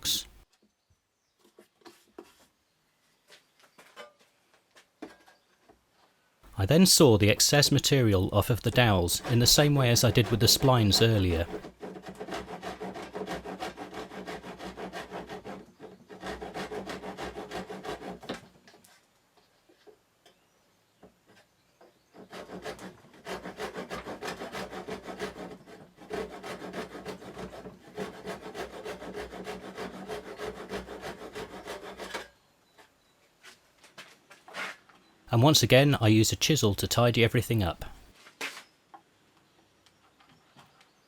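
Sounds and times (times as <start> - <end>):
hand saw cutting wood: 7.2 - 18.8, 22.2 - 32.4.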